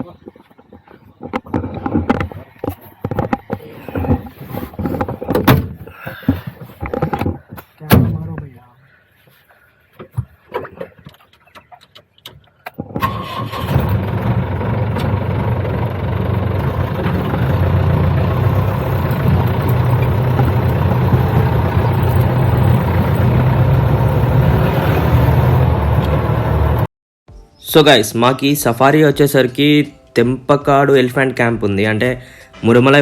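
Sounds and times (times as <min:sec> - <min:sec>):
jeep engine starting and running: 0:12.9 - 0:26.9.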